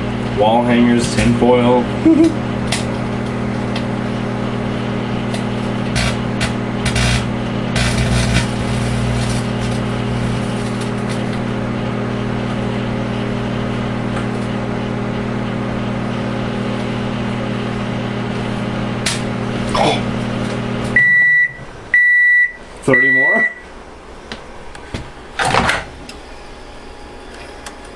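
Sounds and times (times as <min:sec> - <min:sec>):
microwave oven humming: 0:00.0 - 0:27.9
metal arcing crackling snaps: 0:05.2 - 0:11.4.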